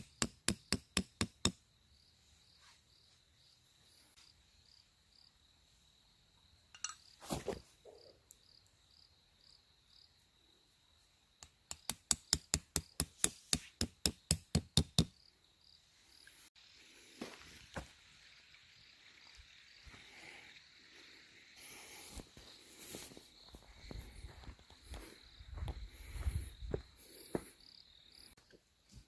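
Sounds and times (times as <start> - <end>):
crickets chirping: 0.0 - 29.0.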